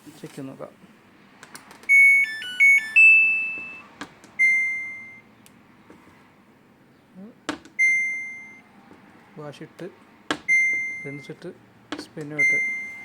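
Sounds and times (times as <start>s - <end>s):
short beeps: 1.9s - 5.3s, 7.8s - 8.7s, 10.5s - 11.4s, 12.4s - 13.0s.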